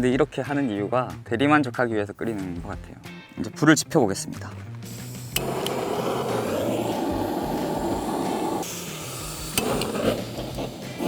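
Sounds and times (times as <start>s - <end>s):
flames catching with rushing noise: 4.9s - 11.0s.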